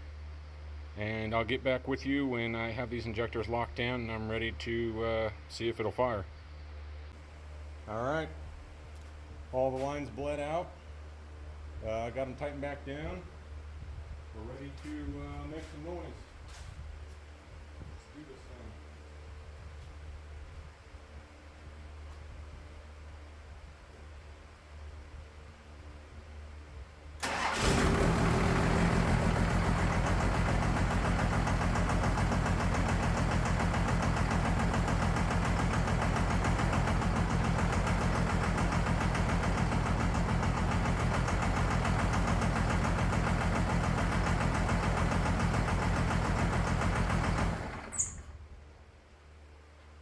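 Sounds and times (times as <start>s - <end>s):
diesel engine starting and idling: 27.2s - 48.4s.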